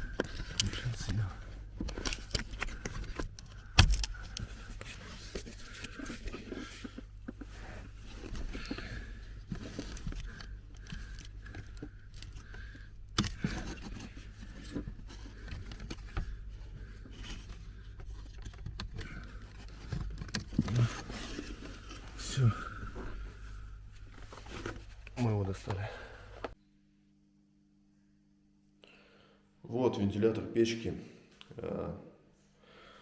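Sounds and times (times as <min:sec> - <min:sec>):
plastic scraping and rustling: 0:00.0 - 0:25.5.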